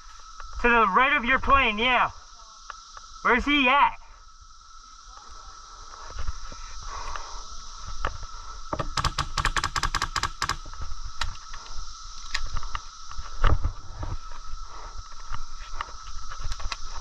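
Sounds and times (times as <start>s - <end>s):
airsoft gun rapid firing: 8.9s - 10.6s.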